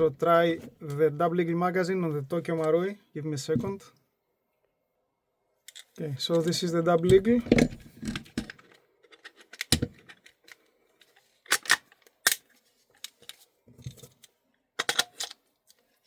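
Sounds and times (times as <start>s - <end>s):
clicks and scrapes of metal parts: 5.6s - 16.0s.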